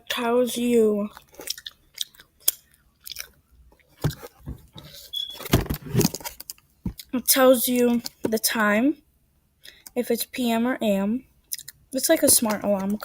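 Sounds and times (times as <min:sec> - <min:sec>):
person chewing gummy candy: 0:01.0 - 0:04.2, 0:11.5 - 0:11.8.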